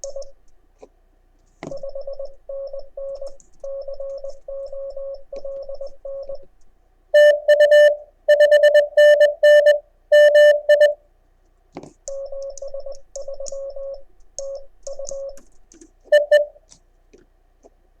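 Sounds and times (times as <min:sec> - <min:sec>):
harsh morse code tone: 0:01.7 - 0:06.5, 0:07.2 - 0:11.0, 0:12.1 - 0:15.4, 0:16.1 - 0:16.5
morse code tones: 0:01.7 - 0:06.5, 0:07.2 - 0:11.0, 0:12.1 - 0:15.4, 0:16.1 - 0:16.6.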